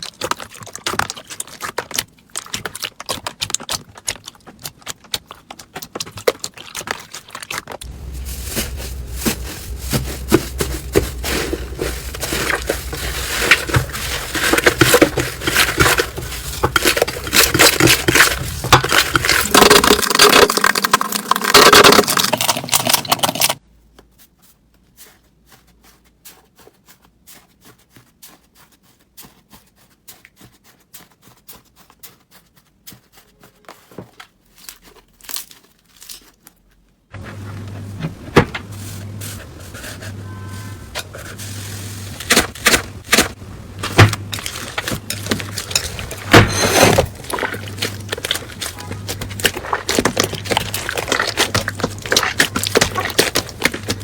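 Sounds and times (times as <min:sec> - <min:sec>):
slime crackling and popping: 0:00.0 - 0:23.5, 0:47.0 - 0:54.0.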